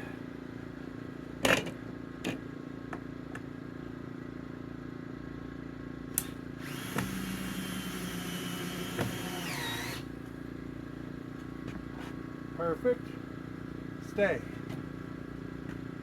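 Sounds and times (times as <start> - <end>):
cordless drill whining: 6.2 - 10.1.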